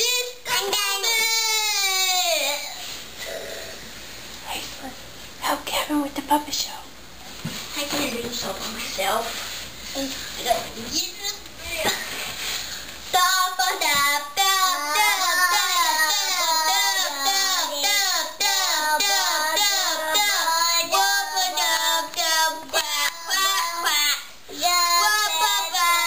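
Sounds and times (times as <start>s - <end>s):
child singing: 13.1s - 26.0s.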